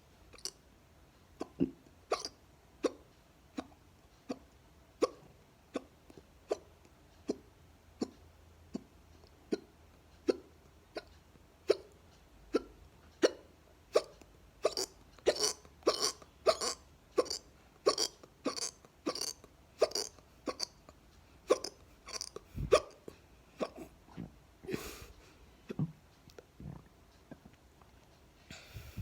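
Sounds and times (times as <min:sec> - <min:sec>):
woman hiccuping: 0:12.5 - 0:20.8, 0:21.5 - 0:23.9
woman breathing in: 0:28.5 - 0:29.0.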